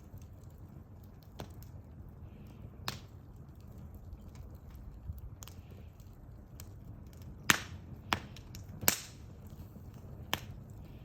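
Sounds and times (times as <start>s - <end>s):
bonfire wood crackling: 0.0s - 11.0s
low steady rumble: 0.0s - 11.0s
sharp pops: 7.4s - 9.2s.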